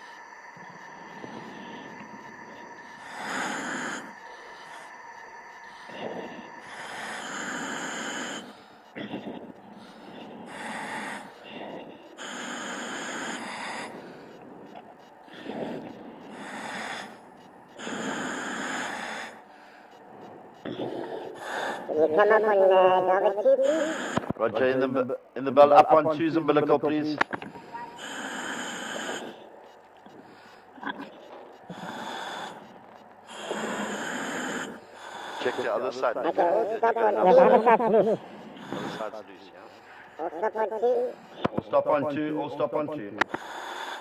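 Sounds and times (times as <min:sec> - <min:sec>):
diver breathing in helmet: 0:00.0 - 0:21.9, 0:27.4 - 0:30.8, 0:31.5 - 0:36.1, 0:37.7 - 0:40.2, 0:43.2 - 0:44.0.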